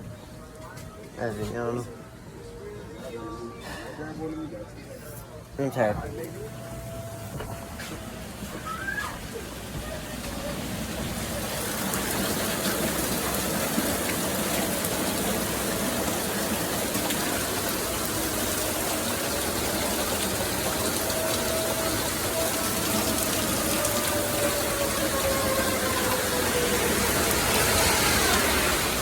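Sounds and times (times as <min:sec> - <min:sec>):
rain hissing: 0:06.6 - 0:29.0.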